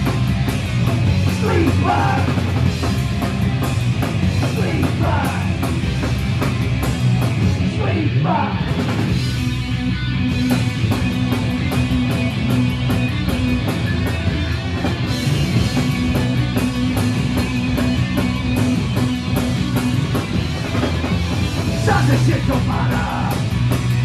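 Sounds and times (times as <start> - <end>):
fast drumming: 0.0 - 7.8, 8.5 - 9.7, 10.3 - 24.0
bass chugging: 0.0 - 24.0
distorted electric guitar: 0.0 - 24.0.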